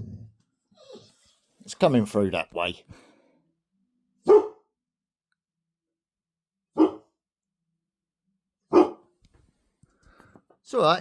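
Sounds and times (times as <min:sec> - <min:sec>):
dog barking: 0:04.2 - 0:04.7, 0:06.7 - 0:07.2, 0:08.7 - 0:09.1.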